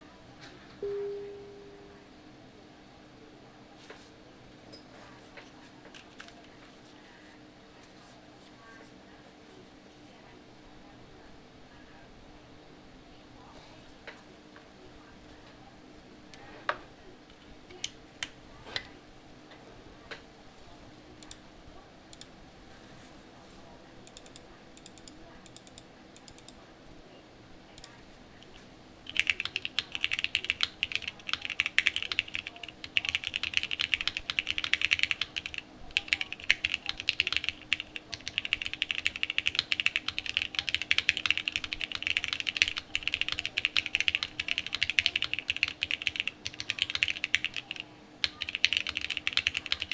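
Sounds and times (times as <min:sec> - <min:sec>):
mechanical keyboard typing: 0:24.1 - 0:26.6, 0:29.0 - 0:49.9.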